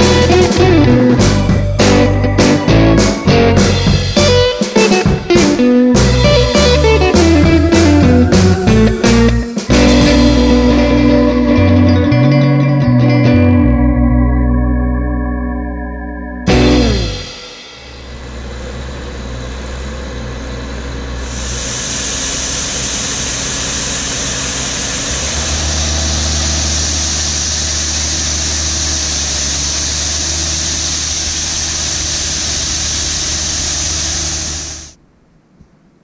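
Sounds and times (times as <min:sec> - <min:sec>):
machine engine running steadily: 0:16.5 - 0:35.0.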